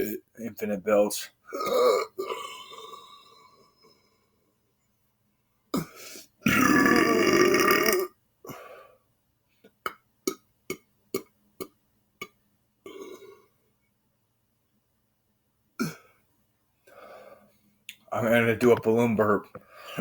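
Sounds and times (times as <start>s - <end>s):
man belching: 1.5s - 3.4s, 5.8s - 8.1s, 12.9s - 13.4s, 15.8s - 16.0s.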